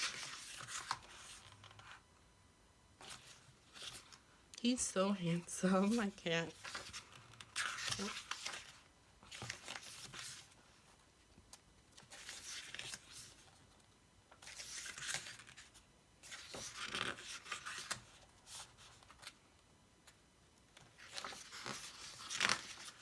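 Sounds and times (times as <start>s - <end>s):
paper pages rustling: 0.0s - 2.0s, 3.0s - 4.2s, 5.6s - 11.0s, 11.9s - 19.4s, 20.8s - 23.0s.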